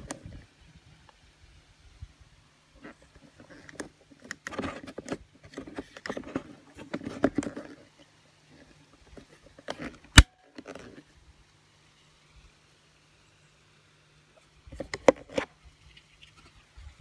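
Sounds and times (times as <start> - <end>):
parts clattering and rustling: 2.8 - 11.1.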